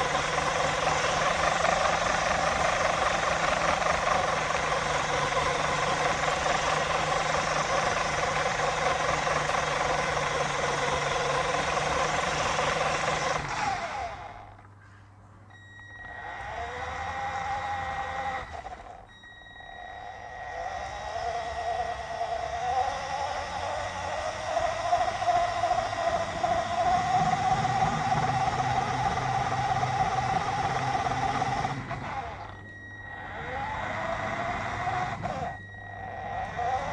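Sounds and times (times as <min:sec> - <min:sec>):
toy car motor and gears: 0:00.0 - 0:14.6, 0:16.0 - 0:19.1, 0:20.1 - 0:32.5, 0:33.2 - 0:36.9
thin steady high tone: 0:19.1 - 0:20.6.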